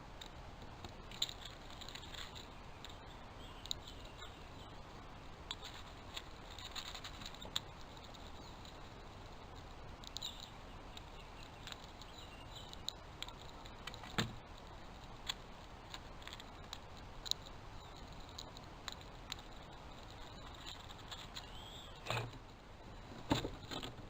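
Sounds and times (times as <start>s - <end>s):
light clicks and scratching: 0.0s - 24.0s.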